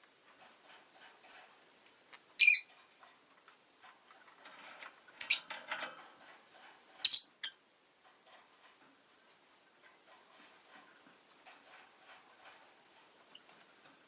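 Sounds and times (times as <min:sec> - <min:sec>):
soft scattered ticks: 0:00.0 - 0:14.0
bird high chirp: 0:02.4 - 0:02.7, 0:07.0 - 0:07.6.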